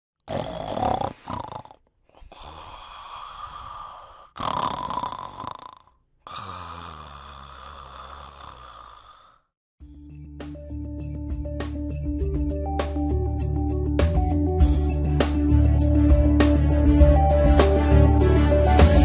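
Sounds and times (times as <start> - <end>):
person snoring: 0.2 - 10.0.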